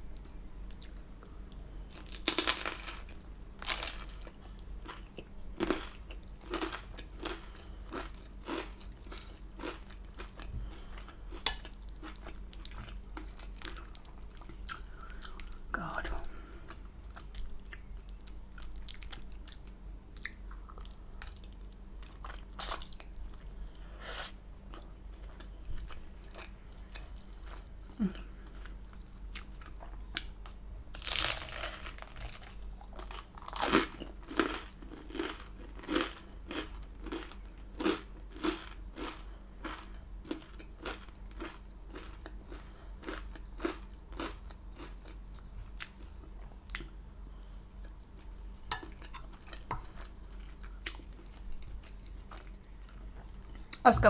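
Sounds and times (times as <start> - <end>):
chewing and mouth noises: 3.7 - 16.0, 24.7 - 47.0, 47.6 - 54.0.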